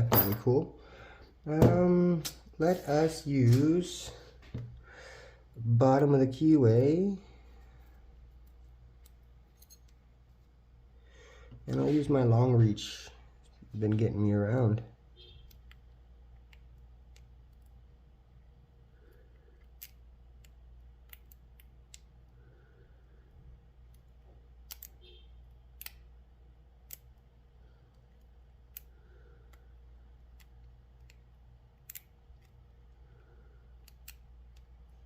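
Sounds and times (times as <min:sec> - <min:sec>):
low steady hum: 0:00.0 - 0:35.0
lock pick clicking in padlock: 0:24.6 - 0:25.0.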